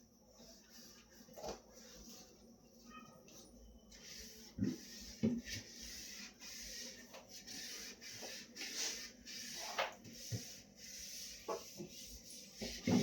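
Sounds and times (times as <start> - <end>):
scrubbing with cloth: 3.9 - 13.0.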